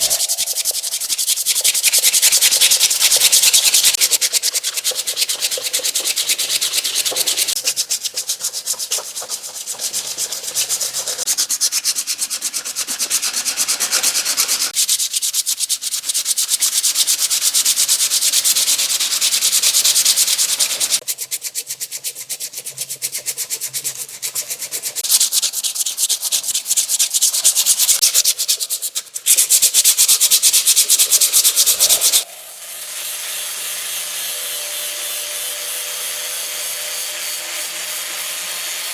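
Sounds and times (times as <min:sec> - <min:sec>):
scrubbing rusty metal: 0:00.0 - 0:11.3.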